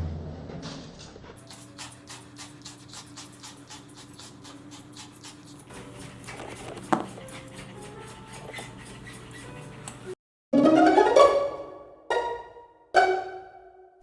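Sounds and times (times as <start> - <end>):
dog panting rapidly: 0.6 - 10.2.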